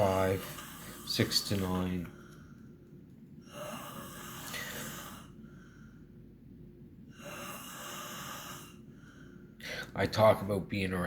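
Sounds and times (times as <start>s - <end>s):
child snoring: 3.5s - 5.4s, 7.2s - 8.8s.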